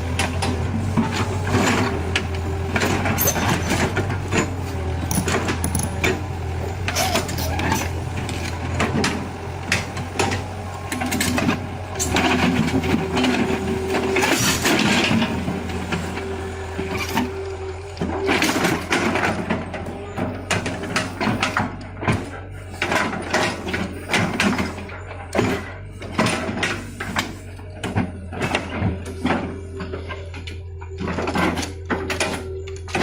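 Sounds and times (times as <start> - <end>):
machinery knocking and clattering: 0.0 - 16.1
heavy vehicle engine running: 0.0 - 33.0.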